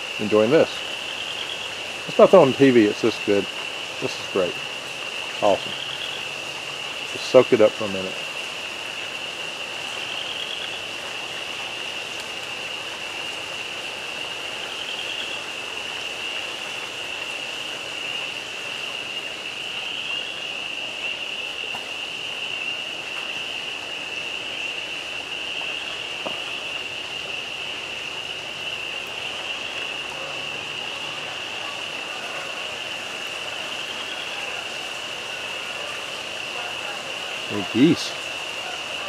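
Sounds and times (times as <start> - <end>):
spring peepers chorus: 0.0 - 39.0.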